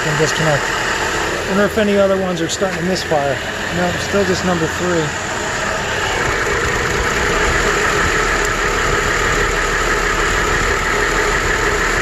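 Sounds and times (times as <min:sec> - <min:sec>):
misfiring engine idling: 0:00.0 - 0:12.0.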